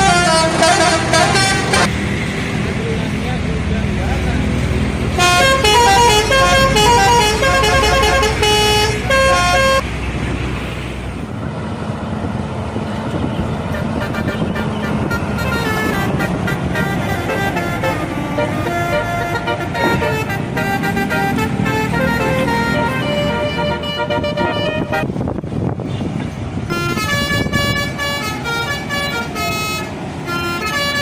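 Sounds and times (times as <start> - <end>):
bus air horn playing a tune: 0.0 - 1.9, 5.2 - 9.8, 13.7 - 25.3, 26.7 - 31.0
bus engine rumble: 0.0 - 31.0
traffic noise: 0.0 - 31.0.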